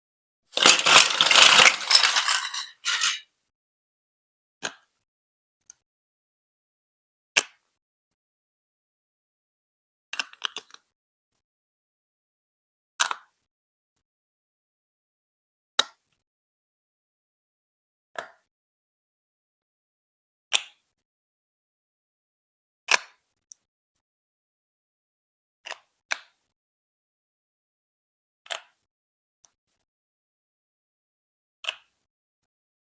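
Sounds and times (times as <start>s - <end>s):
plastic bricks clacking: 0.6s - 3.2s
plastic pieces clattering: 0.6s - 3.2s.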